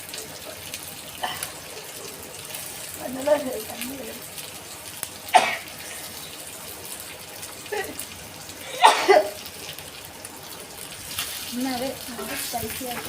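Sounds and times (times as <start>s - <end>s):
fish sizzling in a pan: 0.0s - 13.0s
people sneezing: 8.7s - 9.4s.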